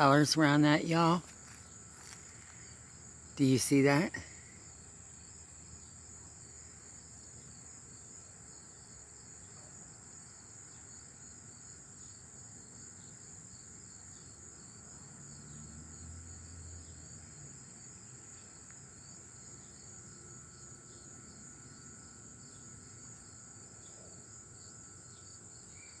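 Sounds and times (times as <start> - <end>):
insects trilling: 0.0 - 26.0
insect pulsing chirp: 18.0 - 26.0.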